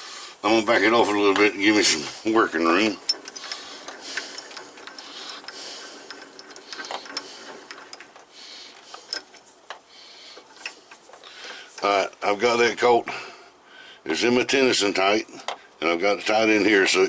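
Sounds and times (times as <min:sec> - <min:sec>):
metallic clicks and knocks: 0:02.8 - 0:11.9.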